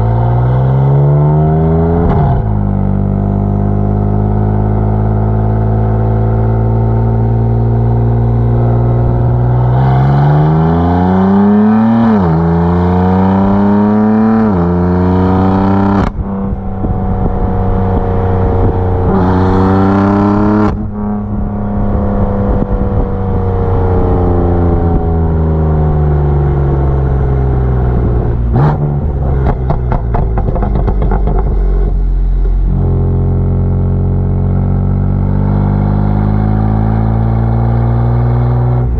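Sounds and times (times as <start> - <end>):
car engine accelerating: 0.0 - 38.9
exhaust pops and crackles: 29.3 - 32.7.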